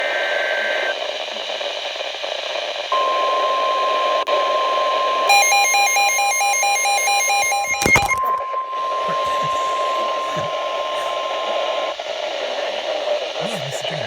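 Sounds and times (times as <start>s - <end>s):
radio static hiss: 0.0s - 5.3s, 7.7s - 14.0s
steady single-pitch warning tone: 2.9s - 13.2s.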